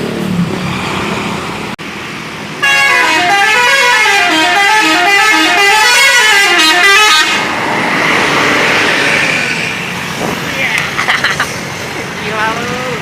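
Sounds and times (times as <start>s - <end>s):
bus musical horn tune: 2.6s - 7.5s
loud even rushing noise: 7.4s - 10.8s.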